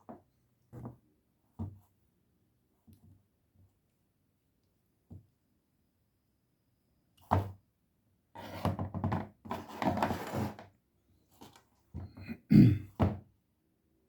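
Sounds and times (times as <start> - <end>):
rubbing or scraping rubber: 8.4 - 10.7.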